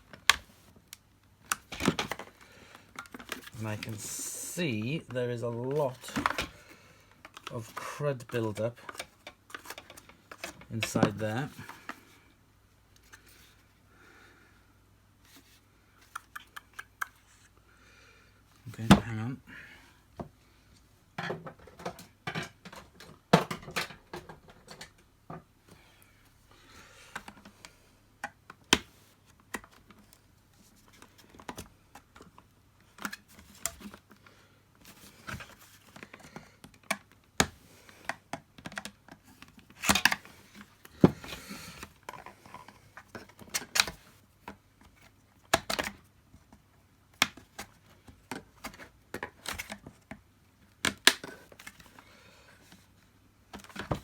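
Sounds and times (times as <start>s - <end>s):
plastic vacuum parts clicking and knocking: 1.4s - 4.0s, 5.9s - 12.0s, 21.2s - 25.5s, 34.8s - 52.0s, 53.5s - 54.0s.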